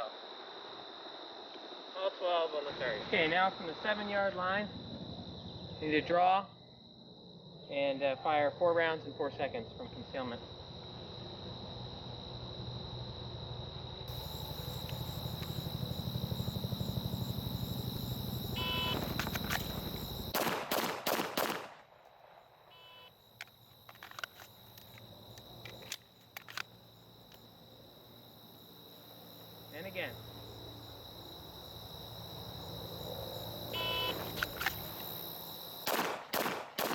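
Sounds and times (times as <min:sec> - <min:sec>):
handgun shots: 0:19.0 - 0:21.8, 0:35.8 - 0:36.9.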